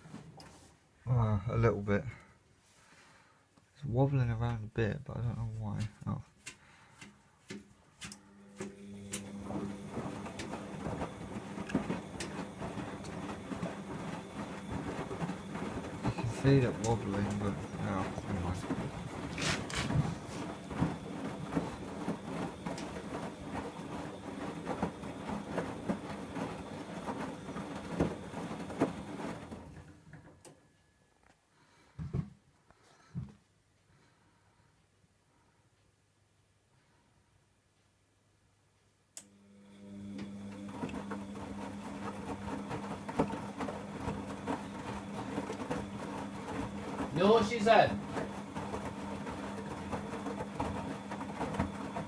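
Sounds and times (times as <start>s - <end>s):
washing machine drum rumbling: 8.5s - 29.9s, 40.0s - 52.0s.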